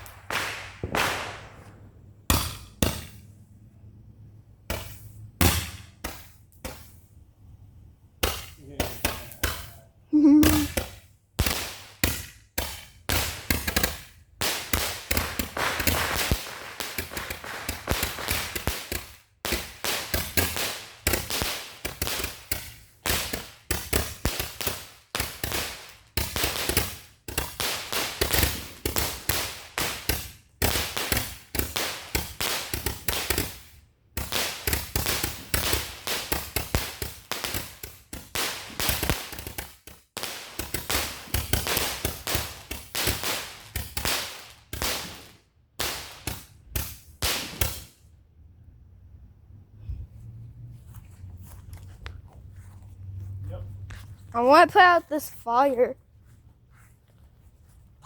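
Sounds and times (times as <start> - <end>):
firecrackers popping and banging: 0.0 - 3.6, 4.4 - 48.2.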